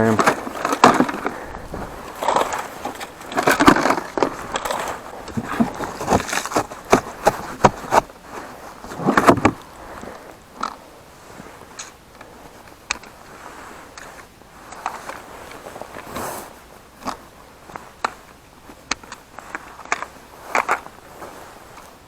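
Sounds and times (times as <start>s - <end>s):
fishing gear clicks and knocks: 0.0s - 10.8s.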